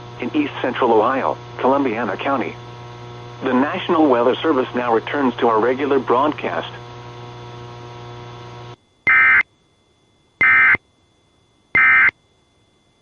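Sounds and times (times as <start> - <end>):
steady radio hum: 0.0 - 7.1, 10.4 - 10.8
buzzy data bursts: 9.1 - 9.4, 10.4 - 10.8, 11.8 - 12.1.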